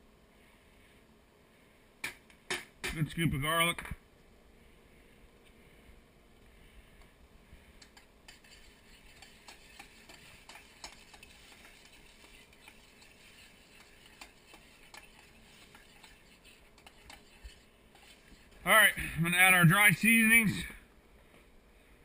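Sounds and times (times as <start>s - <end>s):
utensil clicking against pot: 7.8s - 18.2s.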